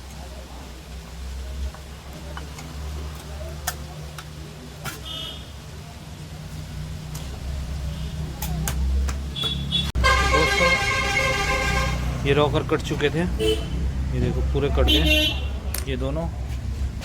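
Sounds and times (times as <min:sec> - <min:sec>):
loud pitched horn-like tone: 0:09.6 - 0:12.2
high horn-like toots: 0:09.8 - 0:12.2.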